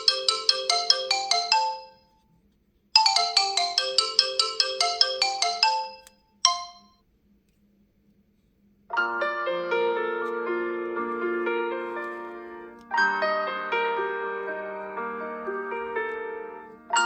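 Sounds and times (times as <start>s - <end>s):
phone ringtone melody: 0.0s - 2.1s, 3.0s - 7.0s, 13.0s - 17.0s.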